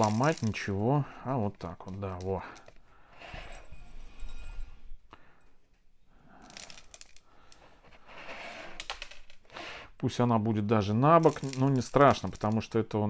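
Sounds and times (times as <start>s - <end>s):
potting medium rustling: 0.0s - 4.9s, 6.4s - 8.4s, 10.3s - 13.0s.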